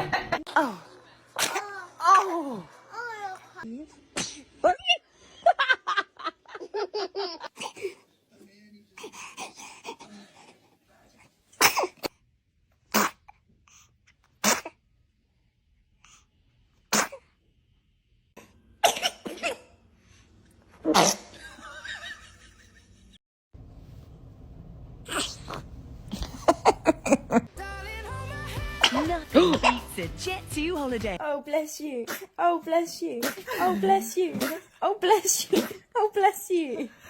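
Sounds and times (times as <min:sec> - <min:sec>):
baby sneezing: 0:01.4 - 0:02.3, 0:04.1 - 0:04.5, 0:11.5 - 0:12.2, 0:12.9 - 0:13.3, 0:14.4 - 0:14.8, 0:16.9 - 0:17.2, 0:18.8 - 0:19.6, 0:20.8 - 0:21.4, 0:25.1 - 0:27.2, 0:28.8 - 0:29.9, 0:32.1 - 0:32.4, 0:33.2 - 0:33.7, 0:34.3 - 0:34.7, 0:35.4 - 0:35.9.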